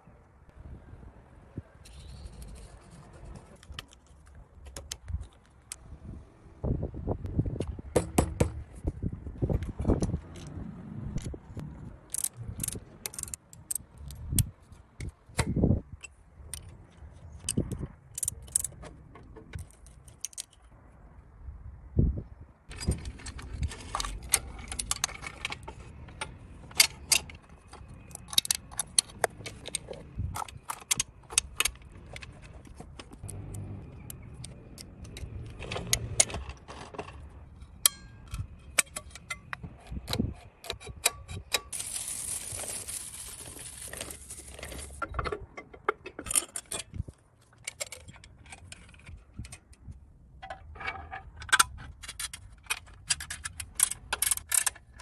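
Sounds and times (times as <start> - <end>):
metal parts and tools clinking: 12.0 - 15.1, 16.0 - 20.7, 22.7 - 49.7, 50.4 - 55.0.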